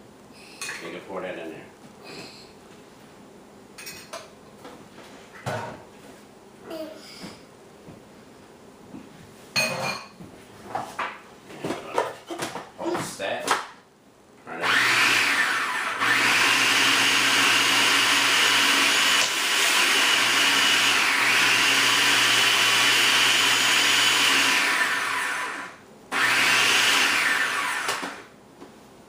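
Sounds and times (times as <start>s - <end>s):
electric mixer motor whine: 14.6s - 28.3s.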